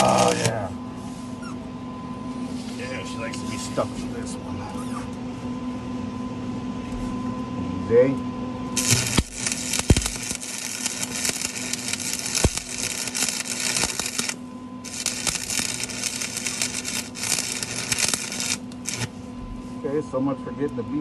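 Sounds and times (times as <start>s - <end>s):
welding arc crackling and sizzling: 0.0s - 0.6s, 8.7s - 19.2s.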